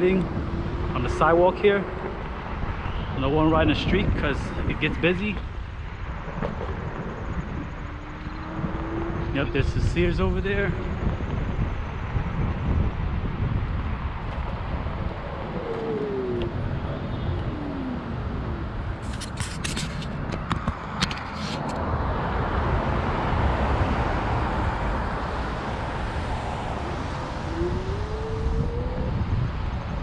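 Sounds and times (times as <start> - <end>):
road traffic passing: 0.0 - 30.0
wind rumbling on microphone: 0.0 - 30.0
faint whine: 14.8 - 19.6.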